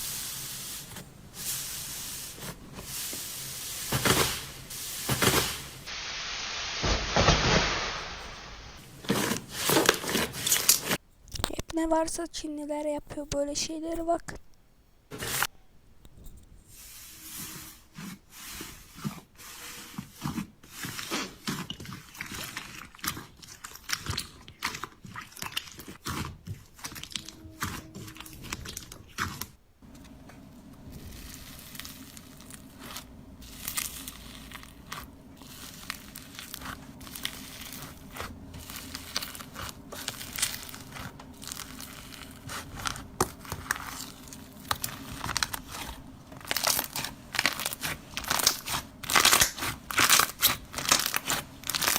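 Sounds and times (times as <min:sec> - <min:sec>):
slime crunchy crackling: 0:08.8 - 0:11.5, 0:20.2 - 0:29.6, 0:30.6 - 0:51.9.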